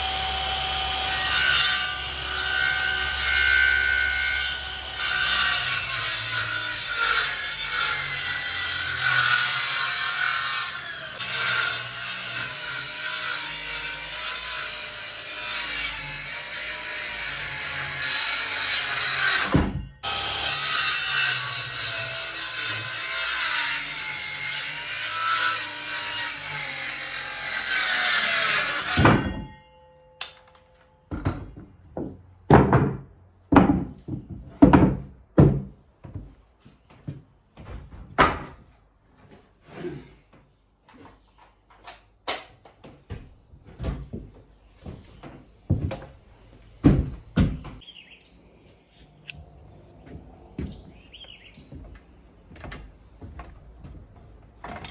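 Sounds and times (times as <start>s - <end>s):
power saw cutting wood: 0.0s - 29.4s
knocks and scrapes of wood: 30.2s - 47.9s, 49.3s - 54.9s.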